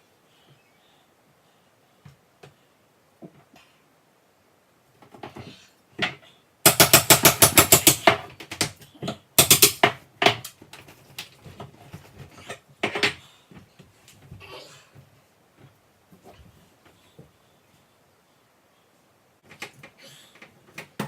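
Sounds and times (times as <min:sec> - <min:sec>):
hammer striking nail puller: 0:06.7 - 0:08.7, 0:09.4 - 0:10.5.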